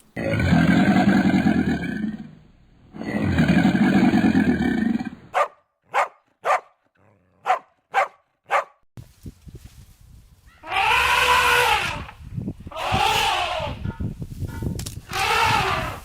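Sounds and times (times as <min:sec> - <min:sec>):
deep rough animal call: 0:00.2 - 0:05.3
dog barking: 0:05.3 - 0:06.8, 0:07.4 - 0:08.8.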